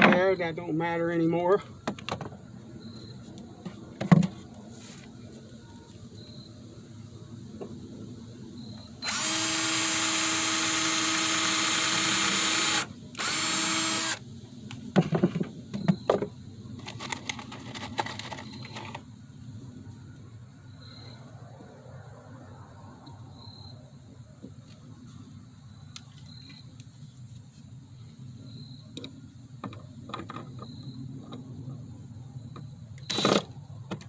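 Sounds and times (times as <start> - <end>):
power drill driving screw into wood: 9.0 - 14.2, 33.0 - 33.5.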